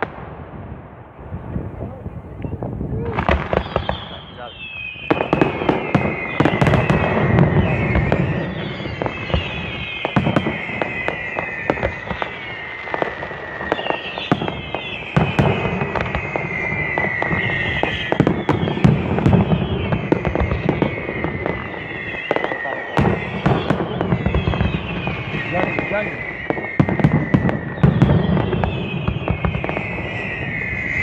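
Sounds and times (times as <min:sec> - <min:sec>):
fireworks bangs and crackles: 0:00.0 - 0:31.0
whistling fireworks: 0:00.0 - 0:31.0.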